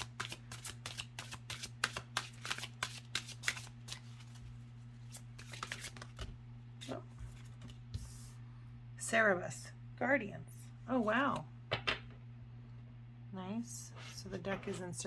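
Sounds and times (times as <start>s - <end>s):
cards being shuffled: 0.0s - 6.4s.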